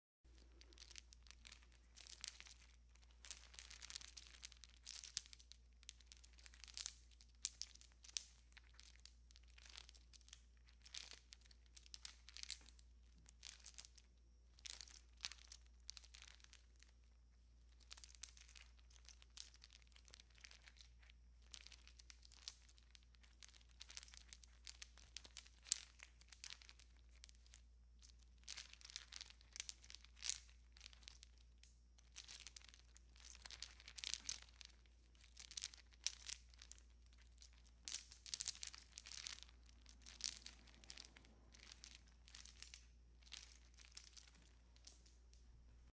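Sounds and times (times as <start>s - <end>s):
wire and bulbs rustling: 0.3s - 14.0s, 28.5s - 45.9s.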